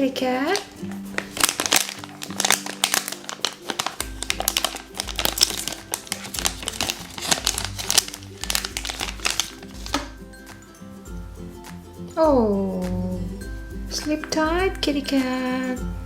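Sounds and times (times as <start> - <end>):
light background music: 0.0 - 16.0
plastic packaging crinkling: 0.4 - 10.2.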